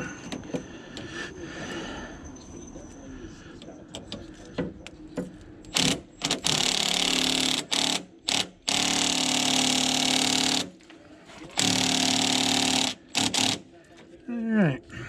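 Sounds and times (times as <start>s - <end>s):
power wrench running: 5.7s - 10.8s, 11.6s - 13.7s.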